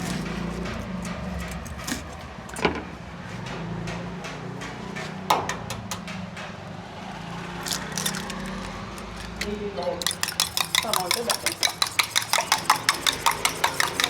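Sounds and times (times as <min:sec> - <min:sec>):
light utensil clicks: 0:07.6 - 0:14.0.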